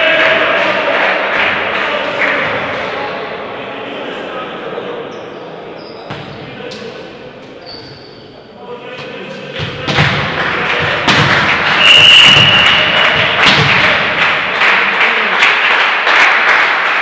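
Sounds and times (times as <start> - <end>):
echoing hall noise: 0.0 - 17.0
referee's whistle: 11.8 - 13.3.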